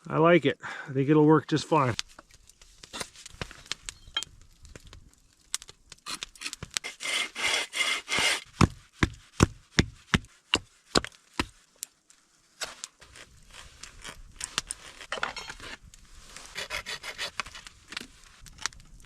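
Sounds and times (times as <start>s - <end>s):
hand tool rasping: 6.1s - 8.5s, 16.5s - 17.7s.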